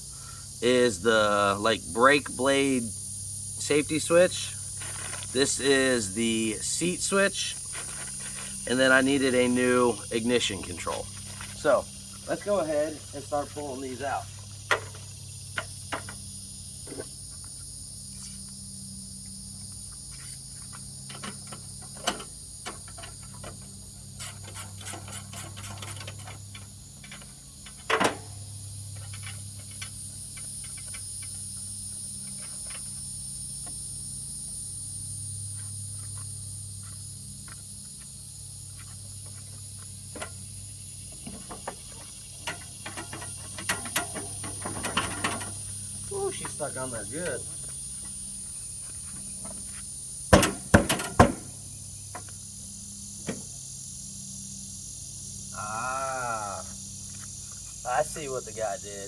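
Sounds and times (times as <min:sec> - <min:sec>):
steady high hiss: 0:00.0 - 0:59.0.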